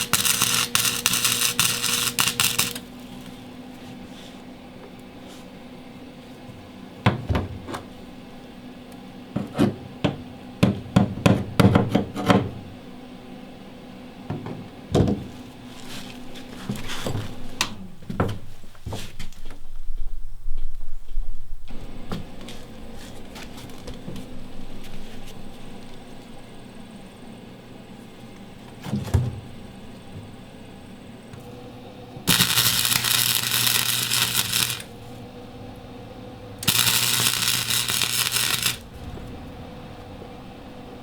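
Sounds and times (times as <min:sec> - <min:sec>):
rumbling and shuffling noise: 0:15.2 - 0:26.4, 0:36.6 - 0:41.0.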